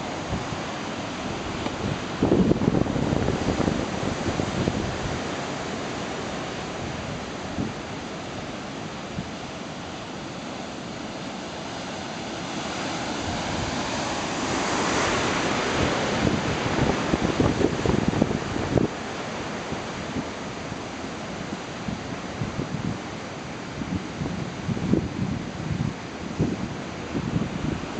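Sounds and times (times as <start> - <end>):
wind buffeting microphone: 0.0 - 10.0, 11.0 - 27.9
ocean surf breaking: 0.0 - 27.9.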